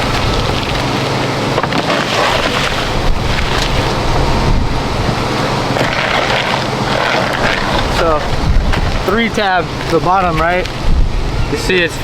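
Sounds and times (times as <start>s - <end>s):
constant low hum: 0.0s - 12.0s
wind on microphone: 0.0s - 12.0s.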